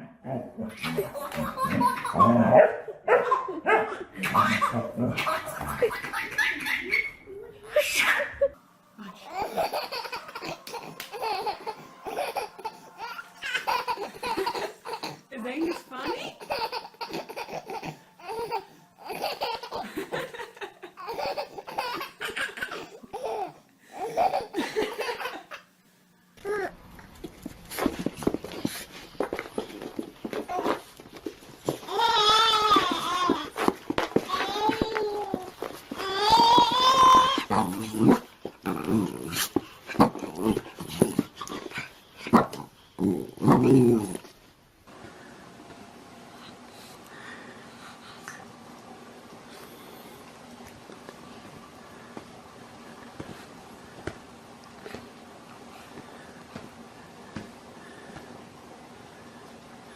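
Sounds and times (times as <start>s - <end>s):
baby laughing: 0.8s - 2.5s, 3.1s - 8.6s, 9.3s - 25.7s, 31.8s - 38.3s
dog growling: 4.2s - 6.0s, 36.9s - 44.3s.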